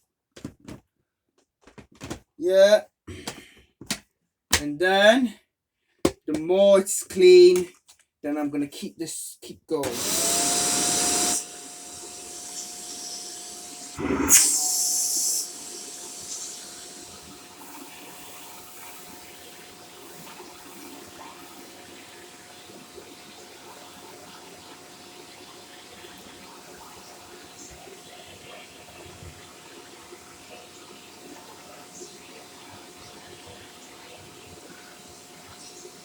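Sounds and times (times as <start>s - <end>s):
vacuum cleaner running: 9.8s - 36.0s.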